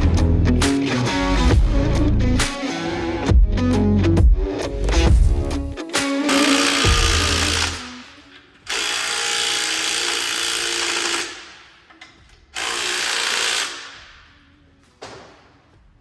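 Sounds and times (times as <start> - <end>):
power tool running: 6.2 - 8.0, 8.6 - 11.6, 12.6 - 14.0.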